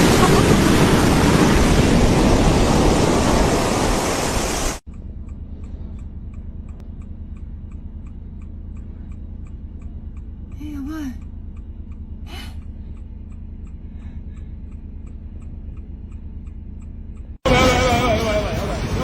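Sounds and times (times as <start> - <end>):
surging sea water: 0.0 - 4.8
low hum: 0.0 - 19.0
faint regular ticking: 4.8 - 17.4.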